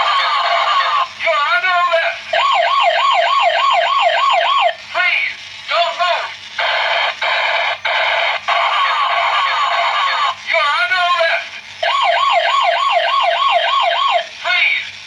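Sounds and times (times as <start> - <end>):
electronic toy siren: 2.3 - 4.8, 6.6 - 10.4, 11.8 - 14.3.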